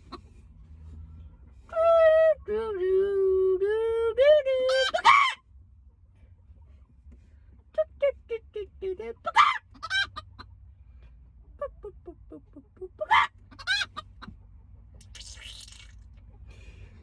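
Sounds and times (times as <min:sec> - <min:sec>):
chicken clucking: 0:00.0 - 0:03.0, 0:04.6 - 0:05.4, 0:07.5 - 0:10.6, 0:11.4 - 0:15.2
chicken squawking: 0:04.7 - 0:05.4, 0:09.2 - 0:10.5, 0:12.9 - 0:14.3.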